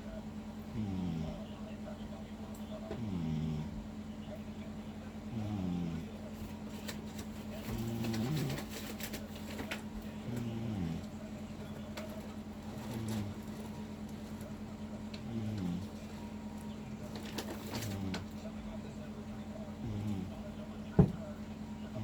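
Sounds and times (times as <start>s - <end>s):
steady low hum: 0.0s - 22.0s
person snoring: 0.7s - 1.4s, 3.0s - 3.8s.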